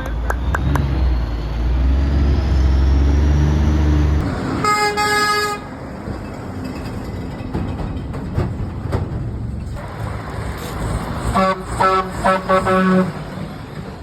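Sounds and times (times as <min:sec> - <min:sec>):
truck engine rumble: 0:00.0 - 0:14.0
air horn blowing: 0:04.6 - 0:05.7, 0:11.3 - 0:13.3.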